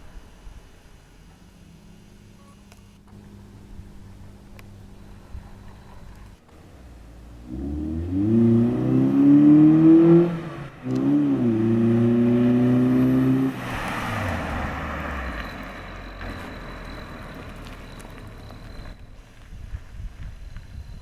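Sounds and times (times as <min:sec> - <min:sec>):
car accelerating past: 0:06.6 - 0:16.5.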